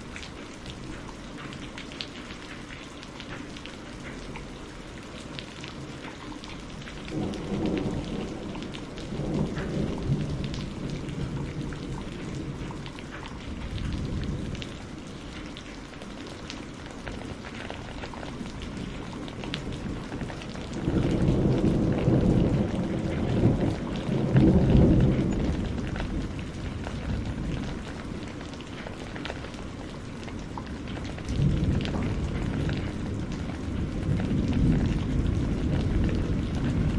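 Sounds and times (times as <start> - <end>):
steady rain: 0.0 - 36.9
rolling thunder: 7.0 - 14.8, 17.9 - 28.4, 30.7 - 36.9.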